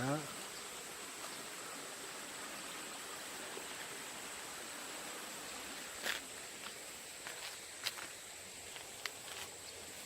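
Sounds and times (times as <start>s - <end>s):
stream hissing: 0.0s - 10.0s
footsteps on rough path: 5.8s - 10.0s.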